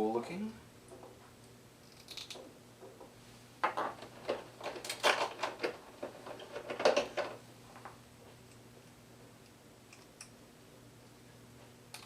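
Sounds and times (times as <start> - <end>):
toy parts clicking and knocking: 1.9 - 2.4.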